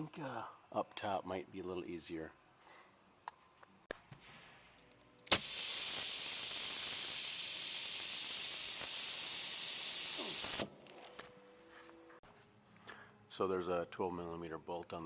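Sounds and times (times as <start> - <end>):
nozzle click: 5.3 - 5.6
gas spraying from nozzle: 5.3 - 10.7.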